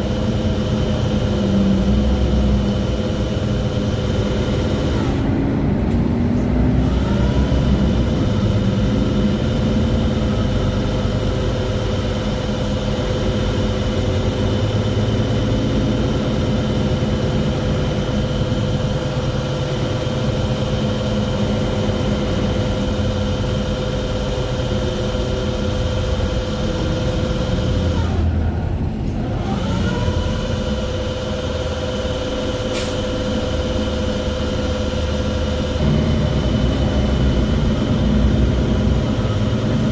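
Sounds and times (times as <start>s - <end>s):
bus engine whine: 0.0s - 39.9s
bus low rumble: 0.0s - 39.9s.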